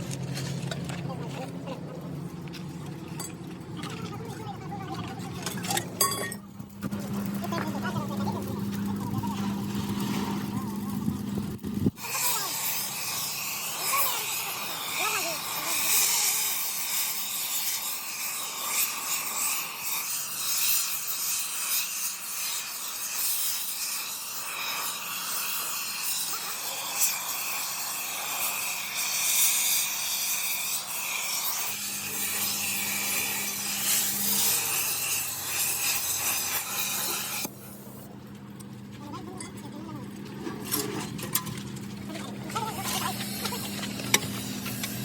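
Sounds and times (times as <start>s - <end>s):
abrasive rasping on metal: 12.0s - 37.5s.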